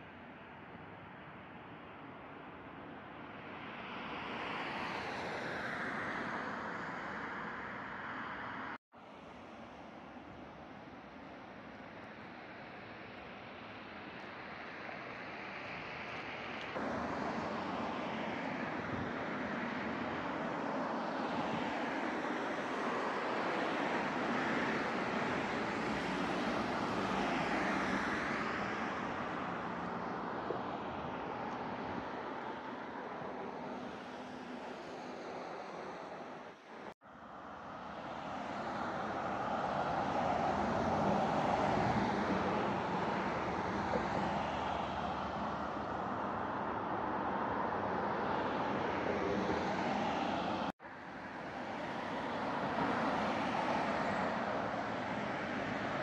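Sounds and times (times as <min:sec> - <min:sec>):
vehicles passing by: 0:11.8 - 0:56.0.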